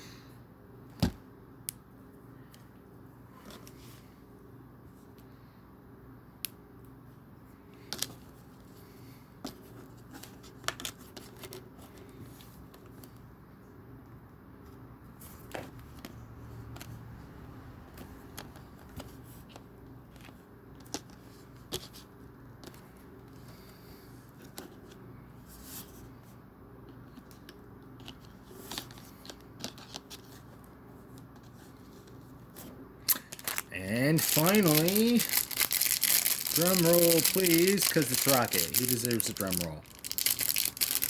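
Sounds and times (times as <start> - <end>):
plastic pieces clicking and rattling: 33.3 - 41.0.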